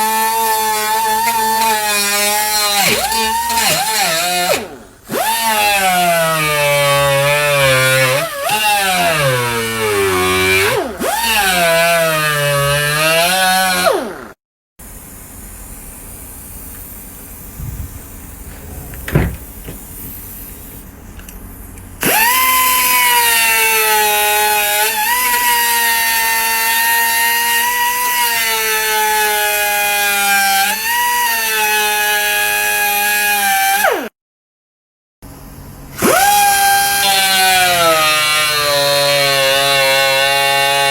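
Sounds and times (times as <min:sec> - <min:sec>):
power tool motor whine: 0:00.0 - 0:14.3, 0:22.0 - 0:34.1, 0:36.0 - 0:40.9.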